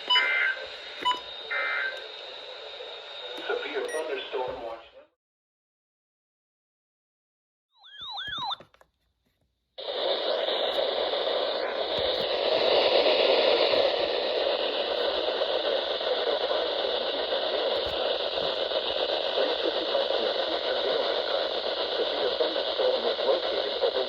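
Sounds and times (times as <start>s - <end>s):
radio static hiss: 0.0s - 5.2s, 9.8s - 24.0s.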